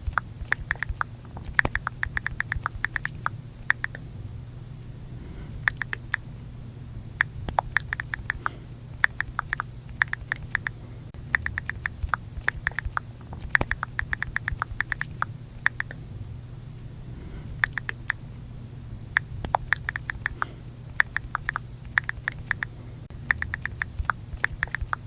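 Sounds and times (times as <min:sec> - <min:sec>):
phone keyboard clicks: 0:00.0 - 0:04.0, 0:07.5 - 0:10.7, 0:11.4 - 0:16.0, 0:17.6 - 0:18.2, 0:19.4 - 0:22.7, 0:23.3 - 0:25.0
low steady hum: 0:00.0 - 0:25.0.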